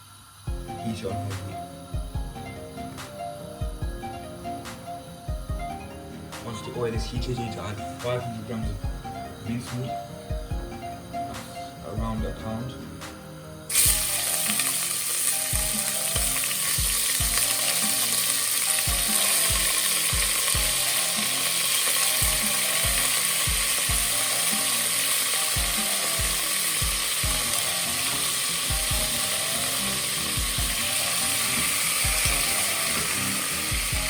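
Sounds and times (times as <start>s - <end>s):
soft background music: 0.0s - 34.0s
meat sizzling in hot oil: 13.7s - 34.0s.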